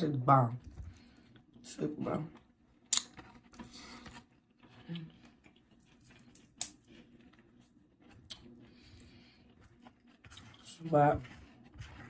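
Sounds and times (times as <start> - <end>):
wet chewing: 0.6 - 12.0.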